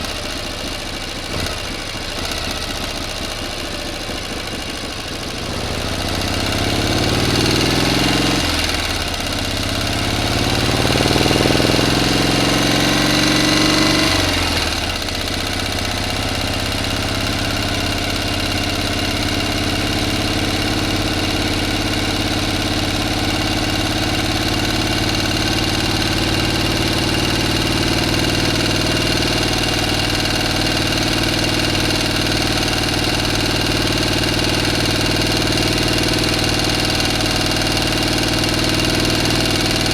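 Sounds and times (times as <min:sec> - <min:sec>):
motor engine revving: 0:01.1 - 0:39.9.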